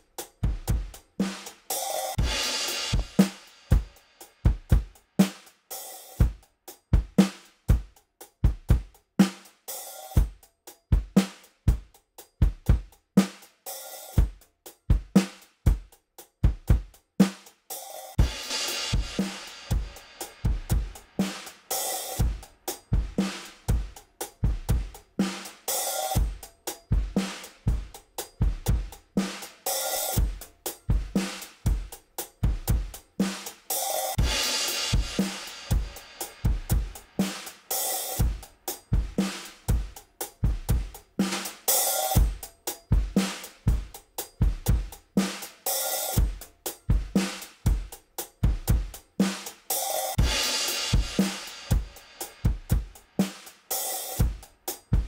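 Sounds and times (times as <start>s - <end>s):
drum kit groove: 0.0s - 55.0s
washy cymbals: 1.2s - 4.4s, 17.7s - 32.4s, 33.2s - 39.8s, 49.3s - 55.0s.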